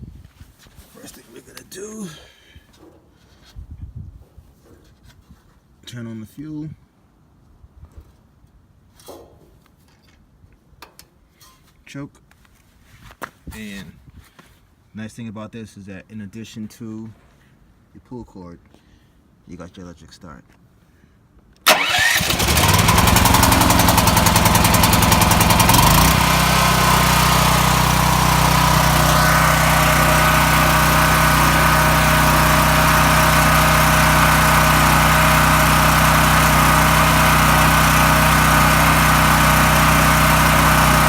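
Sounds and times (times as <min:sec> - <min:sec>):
generator engine running: 0:21.7 - 0:41.0.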